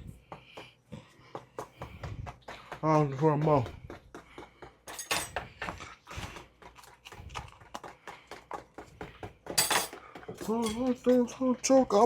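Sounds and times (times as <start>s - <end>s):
kitchen utensils knocking and clicking: 2.7s - 11.3s.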